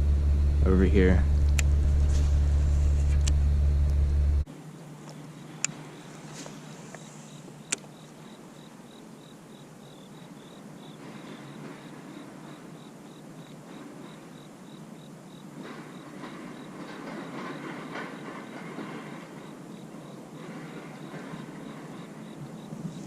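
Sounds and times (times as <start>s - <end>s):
insects chirping: 0.0s - 23.0s
faint background noise: 4.4s - 23.0s
sharp click: 7.7s - 7.9s.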